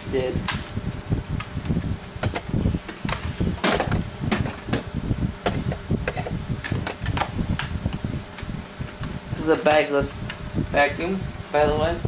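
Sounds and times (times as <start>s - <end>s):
vacuum cleaner clunking and rattling: 2.2s - 7.3s.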